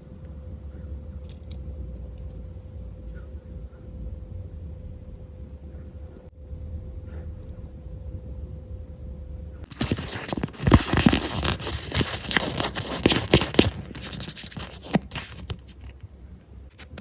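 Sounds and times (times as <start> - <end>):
plastic packaging rustling: 9.7 - 16.0.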